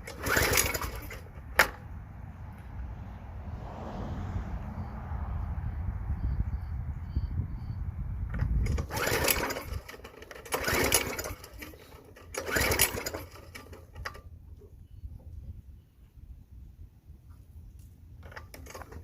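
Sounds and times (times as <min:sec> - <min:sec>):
small engine recoil pull cranking: 0:00.0 - 0:01.8, 0:08.4 - 0:14.3, 0:18.2 - 0:19.0.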